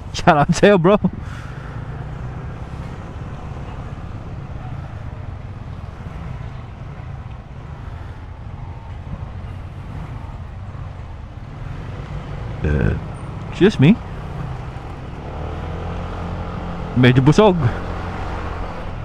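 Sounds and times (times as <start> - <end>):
motor scooter running: 9.2 - 19.0.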